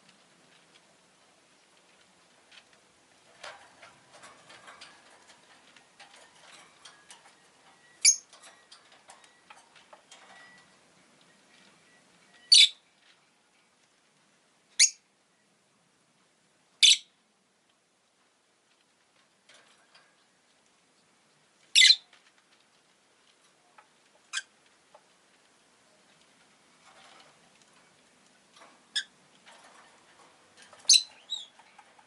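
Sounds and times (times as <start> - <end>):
lovebird shrill chirps: 8.0 - 8.3, 12.4 - 12.8, 14.8 - 15.0, 16.8 - 17.1, 21.8 - 22.0, 30.9 - 31.5.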